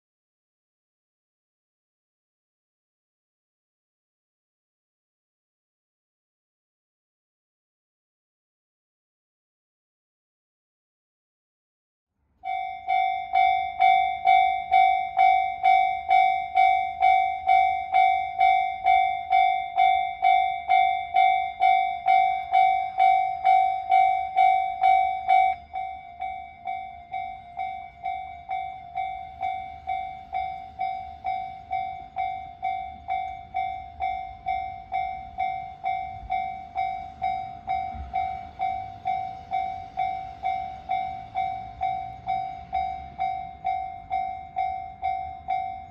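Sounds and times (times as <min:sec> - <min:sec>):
level crossing alarm ringing: 0:12.4 - 0:45.9.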